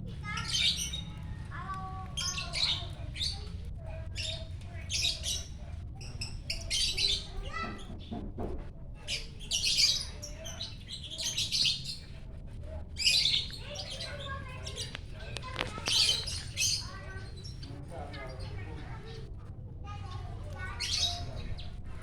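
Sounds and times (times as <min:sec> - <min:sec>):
lovebird shrill chattering: 0:13.0 - 0:17.6.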